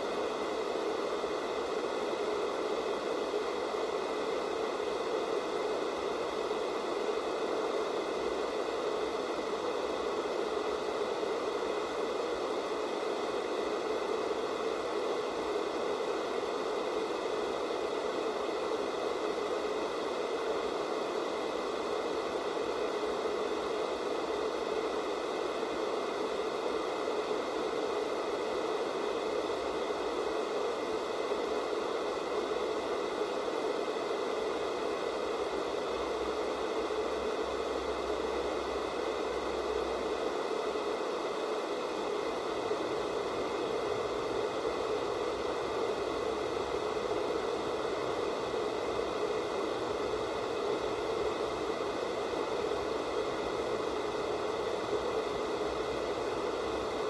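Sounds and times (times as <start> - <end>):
faint constant whines: 0.0 - 57.0
tv static hiss: 0.0 - 57.0.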